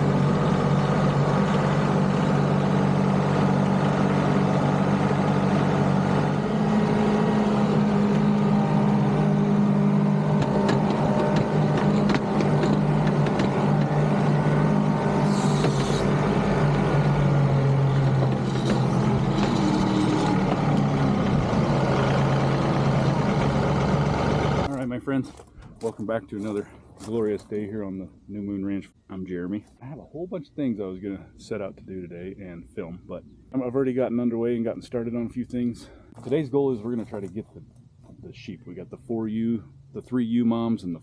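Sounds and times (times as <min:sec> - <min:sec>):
tractor diesel engine running: 0:00.0 - 0:27.8.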